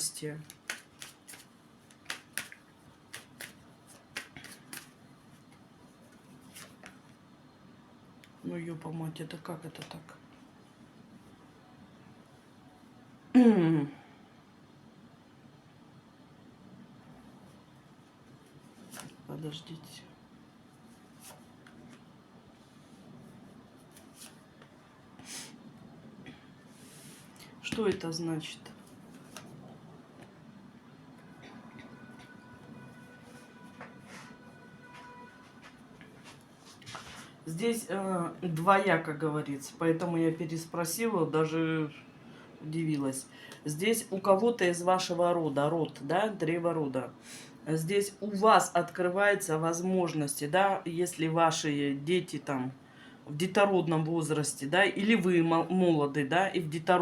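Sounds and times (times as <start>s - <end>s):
faint rustling and handling: 0.2s - 7.3s, 17.2s - 19.4s, 20.6s - 25.7s, 26.4s - 30.5s, 31.2s - 39.7s
cards snapping and flicking: 0.4s - 5.0s
soft hisses: 25.2s - 25.7s, 26.6s - 27.6s.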